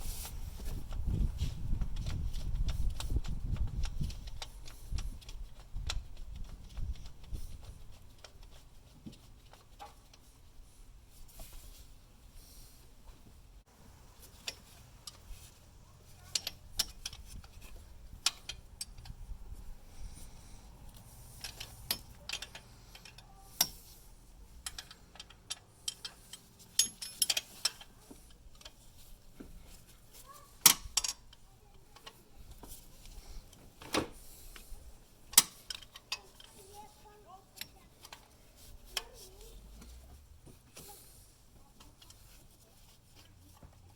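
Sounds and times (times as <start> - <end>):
hand tools clinking on metal: 16.1 - 19.1, 21.0 - 29.1, 29.7 - 33.6, 34.3 - 43.8.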